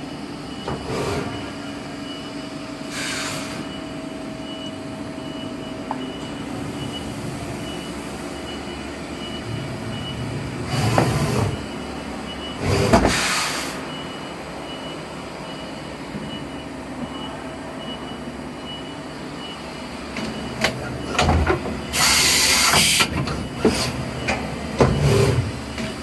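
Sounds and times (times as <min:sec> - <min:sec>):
mechanical clunks and knocks: 0:09.9 - 0:11.7, 0:12.6 - 0:13.2, 0:20.1 - 0:21.9, 0:22.7 - 0:26.0.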